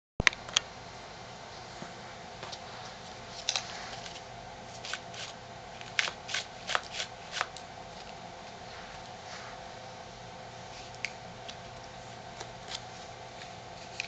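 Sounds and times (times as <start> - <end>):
steady background hiss: 0.3 - 14.0
paper rustling and clicking: 12.4 - 14.0.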